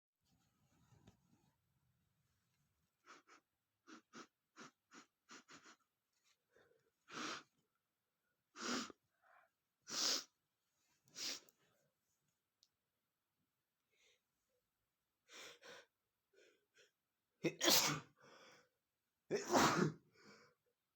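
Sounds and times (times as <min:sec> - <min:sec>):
man sneezing: 0:17.5 - 0:18.1, 0:19.3 - 0:20.0.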